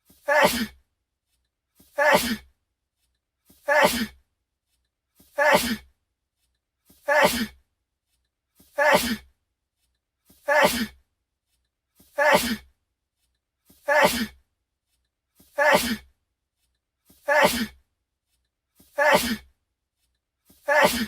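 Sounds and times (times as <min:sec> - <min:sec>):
man sneezing: 0:00.2 - 0:00.8, 0:02.0 - 0:02.4, 0:03.7 - 0:04.2, 0:05.4 - 0:05.8, 0:07.1 - 0:07.6, 0:08.8 - 0:09.2, 0:10.5 - 0:11.0, 0:12.2 - 0:12.6, 0:13.9 - 0:14.4, 0:15.6 - 0:16.0, 0:17.3 - 0:17.8, 0:19.0 - 0:19.4, 0:20.7 - 0:21.0.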